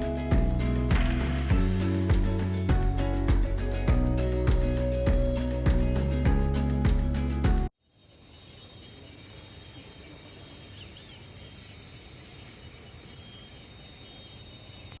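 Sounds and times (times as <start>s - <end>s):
faint bird chirps: 7.8s - 15.0s
high-pitched insect drone: 8.1s - 15.0s.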